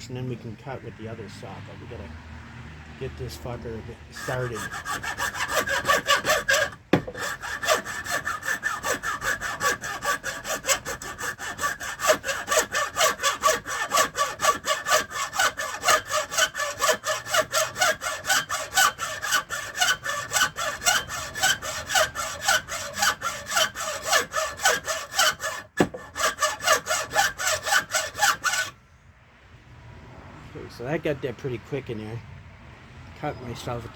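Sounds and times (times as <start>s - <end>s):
hand saw cutting antler: 3.2s - 28.7s.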